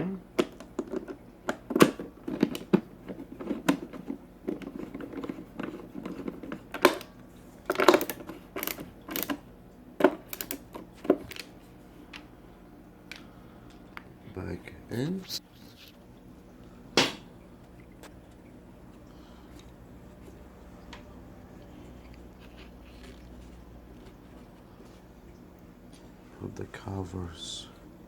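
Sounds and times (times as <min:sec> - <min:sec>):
plastic and metal parts clicking: 0:07.7 - 0:09.4, 0:10.0 - 0:11.5.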